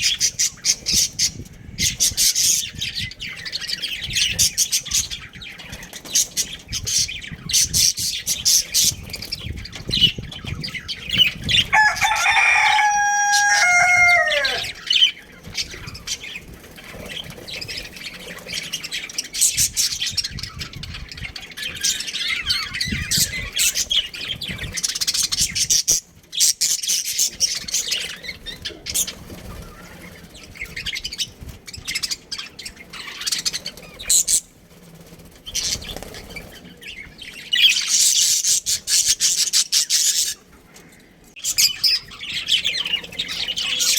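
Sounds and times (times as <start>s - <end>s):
budgerigars chirping: 0.0s - 34.5s, 35.5s - 40.5s, 41.4s - 43.9s
rooster crowing: 11.6s - 15.0s.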